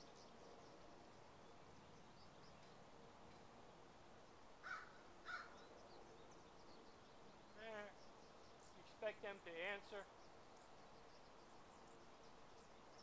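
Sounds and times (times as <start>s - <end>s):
bird giving harsh calls: 4.6s - 5.6s.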